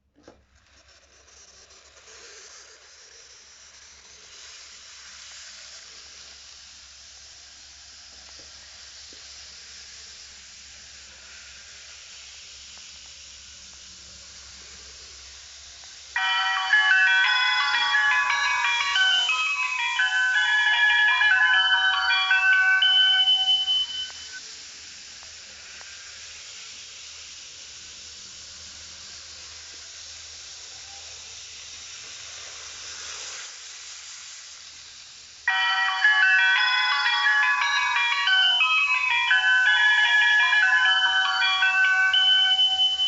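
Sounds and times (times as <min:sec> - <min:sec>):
steady hiss: 0:00.0 - 0:43.0
train chime melody: 0:16.1 - 0:24.4, 0:35.5 - 0:43.0.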